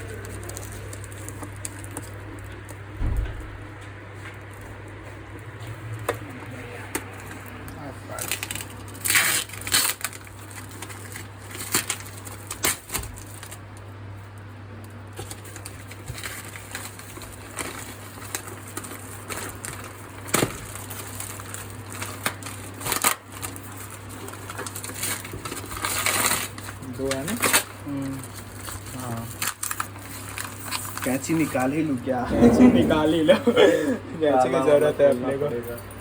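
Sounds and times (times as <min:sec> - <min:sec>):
cardboard package rustling: 0:15.3 - 0:32.0
steady low hum: 0:31.9 - 0:34.2.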